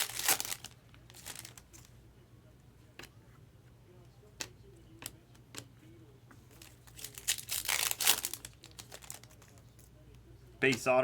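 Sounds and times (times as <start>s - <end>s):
wrapper crinkling and tearing: 0.0s - 1.8s, 6.6s - 9.6s.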